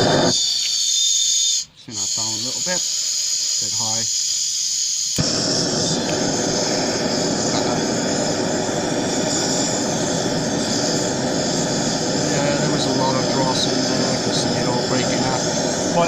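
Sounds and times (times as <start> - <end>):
torch flame roaring: 0.0 - 0.4, 5.2 - 16.0
torch click: 3.1 - 16.0.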